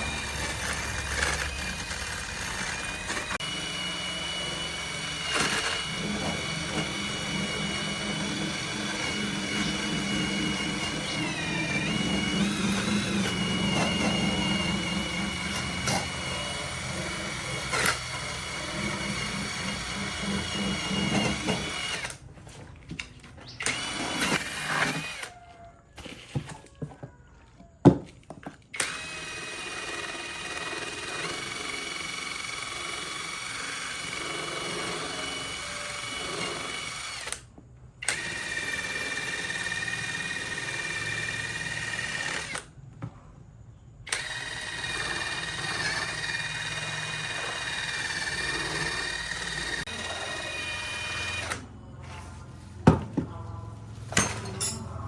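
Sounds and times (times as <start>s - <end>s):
power tool whining: 0.0s - 27.0s, 27.8s - 42.7s, 44.0s - 52.3s.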